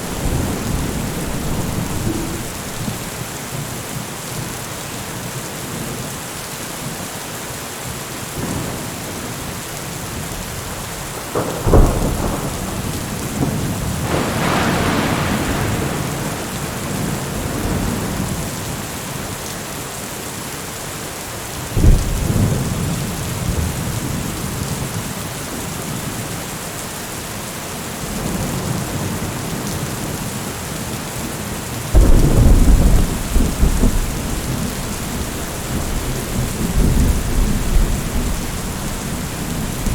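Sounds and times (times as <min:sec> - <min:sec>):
thunder clap and rumble: 0:00.0 - 0:03.3, 0:11.1 - 0:18.8, 0:32.0 - 0:39.9
steady rain: 0:00.0 - 0:39.9.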